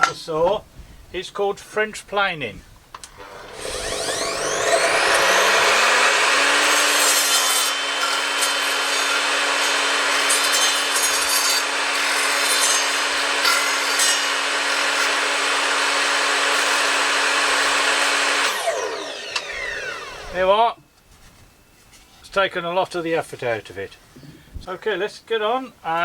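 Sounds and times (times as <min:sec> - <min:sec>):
saw motor whine: 0:03.1 - 0:20.6
saw blade rasping on wood: 0:03.2 - 0:20.3.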